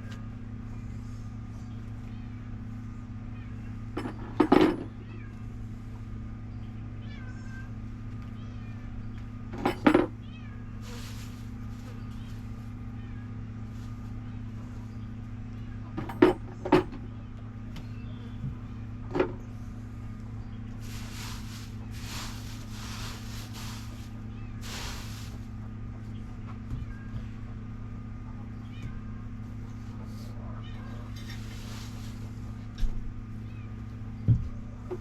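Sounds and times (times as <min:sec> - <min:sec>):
steady low hum: 0:00.0 - 0:35.0
cat meowing: 0:07.0 - 0:07.7, 0:30.4 - 0:31.3.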